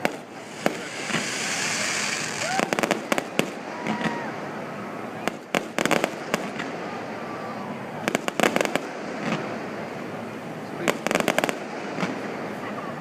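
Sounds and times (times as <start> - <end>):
fireworks cracking and popping: 0.0 - 4.3, 5.2 - 6.9, 8.0 - 10.0, 10.7 - 12.6.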